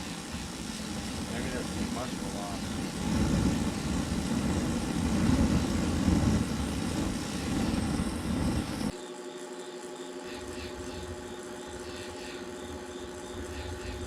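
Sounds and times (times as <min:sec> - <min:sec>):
furnace burner rushing: 0:00.0 - 0:09.0
steady hum: 0:00.0 - 0:14.0.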